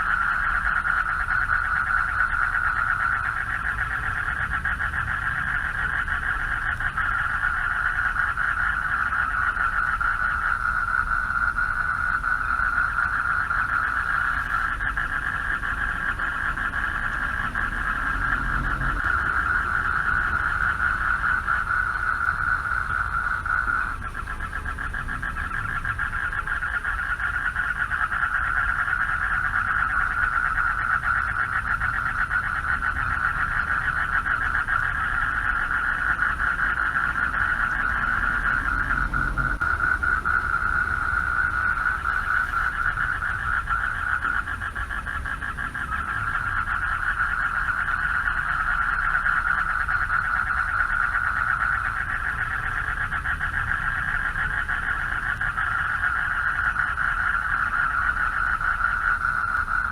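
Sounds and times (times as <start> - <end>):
frogs calling in chorus: 0.0 - 59.9.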